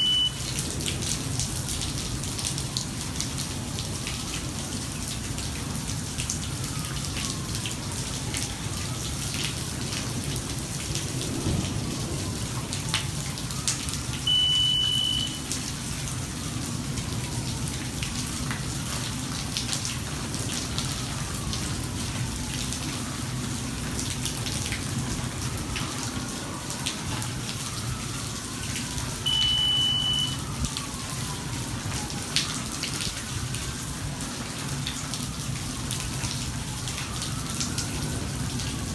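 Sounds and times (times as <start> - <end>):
high electronic beep: 0.0 - 0.5, 14.3 - 15.4, 29.3 - 30.4
rain drops striking: 0.0 - 38.9.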